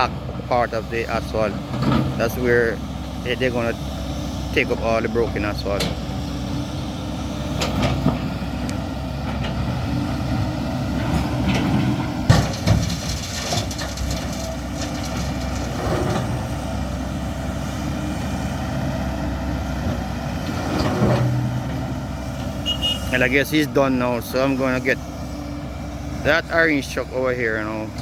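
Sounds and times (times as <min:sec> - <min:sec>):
diesel machinery rumbling: 0:00.0 - 0:28.0
metal knocks and clanks: 0:11.1 - 0:16.3.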